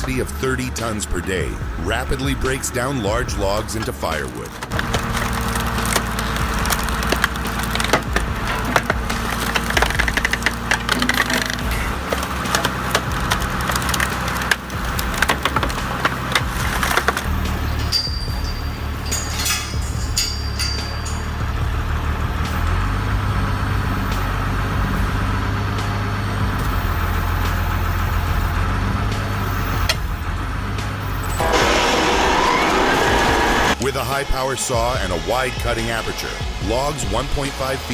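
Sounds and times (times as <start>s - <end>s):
heavy machine engine running: 0.0s - 17.9s, 18.6s - 36.9s
hydraulic wood splitter running: 4.5s - 17.7s, 31.4s - 33.9s
wood pieces knocking together: 4.6s - 17.3s
logs cracking as split: 4.7s - 17.4s.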